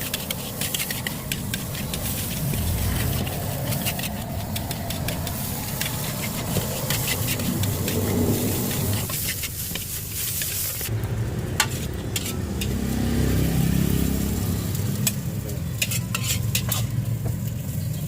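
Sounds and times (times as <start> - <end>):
food sizzling in wok: 0.0 - 18.0
low rumble: 1.8 - 9.1.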